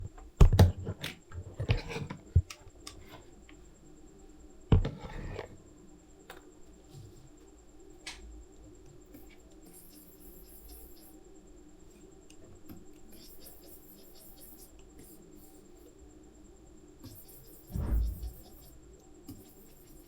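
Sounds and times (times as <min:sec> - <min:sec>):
electrical hum: 0:12.9 - 0:20.0
thin high whine: 0:17.0 - 0:20.0.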